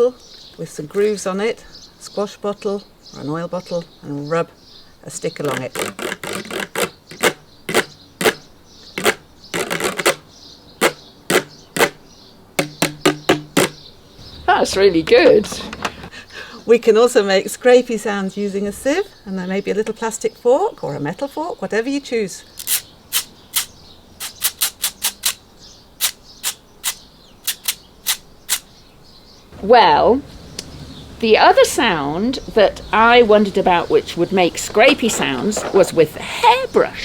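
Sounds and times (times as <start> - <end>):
stick scraping grooved bottle: 5.4 - 10.2, 10.8 - 12.0, 12.6 - 13.8, 22.6 - 25.4, 26.0 - 28.6
fork scraping mesh sieve: 9.0 - 10.2, 10.8 - 12.0, 22.6 - 25.4.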